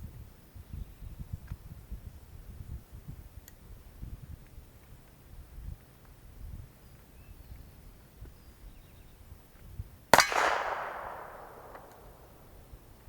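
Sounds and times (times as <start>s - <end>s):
gunshot with echo: 10.2s - 13.0s.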